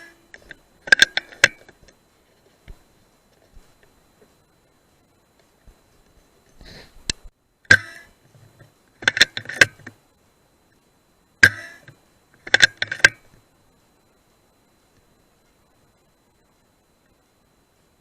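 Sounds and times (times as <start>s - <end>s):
sharp clicks and knocks: 0.0s - 2.0s, 7.0s - 10.0s, 11.4s - 13.4s.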